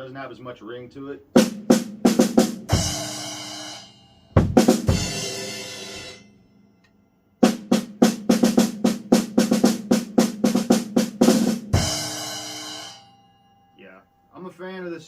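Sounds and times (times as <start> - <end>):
cymbal crashes: 2.7 - 6.3, 11.5 - 13.2
fast snare drum roll: 7.5 - 12.0.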